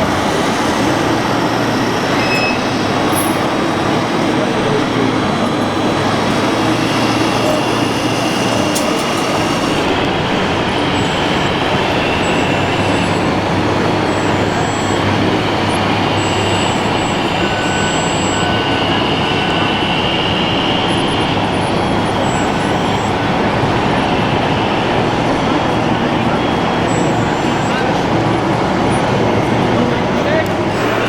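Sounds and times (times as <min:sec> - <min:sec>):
small electric motors whining: 0:00.0 - 0:28.0, 0:30.4 - 0:31.0
busy hall crowd noise: 0:00.0 - 0:31.0.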